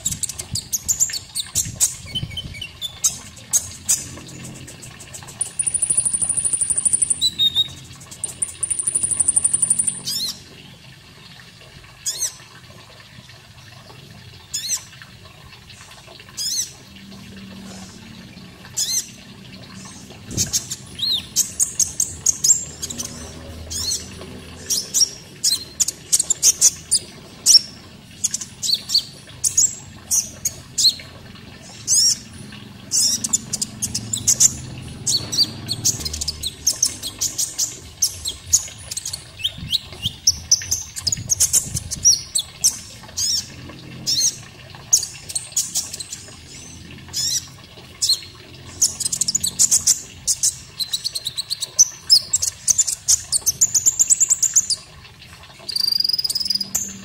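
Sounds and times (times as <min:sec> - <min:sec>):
faint running water: 0:00.0 - 0:57.0
songbird trilling and chirping: 0:05.4 - 0:10.0.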